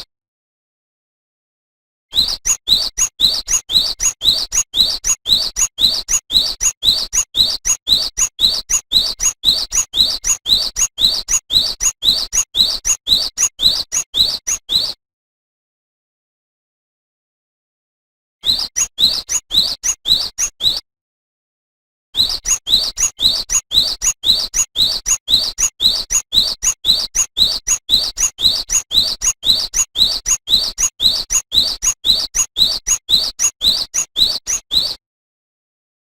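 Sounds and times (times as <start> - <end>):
bird singing high rising notes: 29.4 - 35.0.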